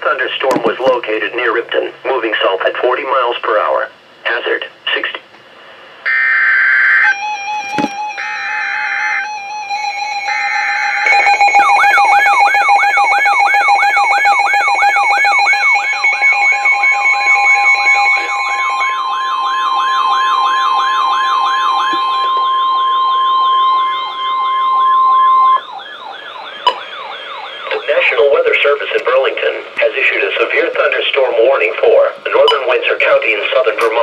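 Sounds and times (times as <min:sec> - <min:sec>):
electronic sirens wailing: 0:06.0 - 0:29.6
high warning alarm tone: 0:06.1 - 0:28.5.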